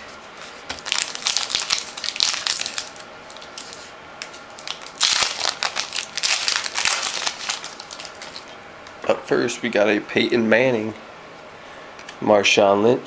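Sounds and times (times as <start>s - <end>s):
plastic wrapper crinkling: 0.7s - 8.6s.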